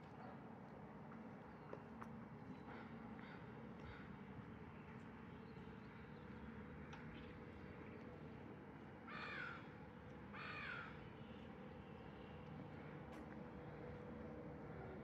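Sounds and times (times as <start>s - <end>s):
faint outdoor hum: 0.0s - 15.0s
crow cawing: 9.1s - 9.6s, 10.4s - 10.9s.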